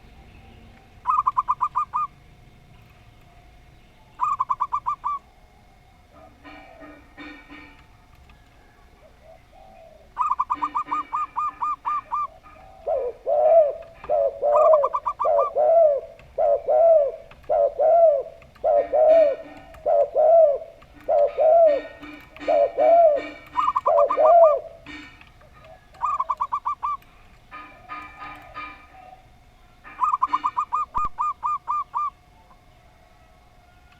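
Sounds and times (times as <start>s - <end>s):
doves cooing: 0.0s - 33.9s.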